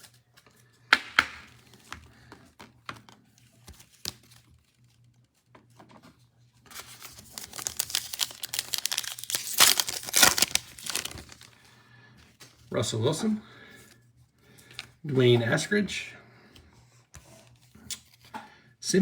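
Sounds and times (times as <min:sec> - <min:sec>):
plastic wrapper tearing and crinkling: 0:06.7 - 0:11.6.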